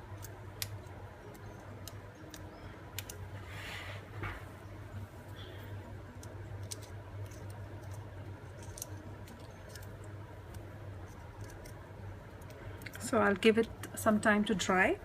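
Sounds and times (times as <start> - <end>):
steady low hum: 0.0 - 15.0
paper pieces handled with clicks: 6.1 - 13.1.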